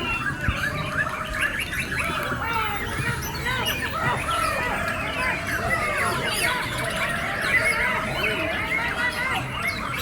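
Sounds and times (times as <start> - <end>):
songbirds singing and calling: 0.0 - 10.0.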